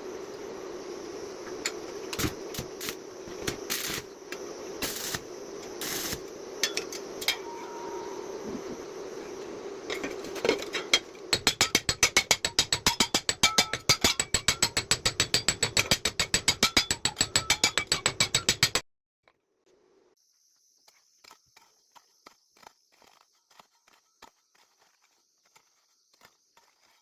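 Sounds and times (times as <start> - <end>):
machine hum: 0.0 - 11.3.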